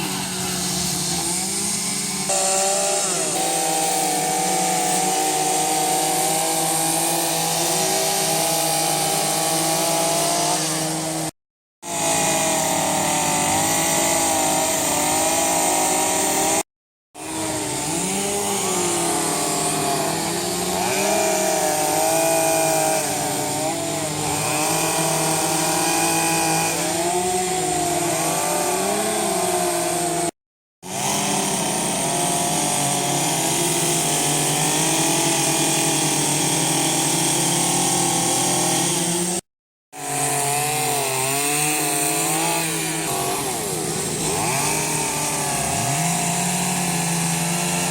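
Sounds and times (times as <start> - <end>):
chainsaw cutting wood: 0.0 - 47.9.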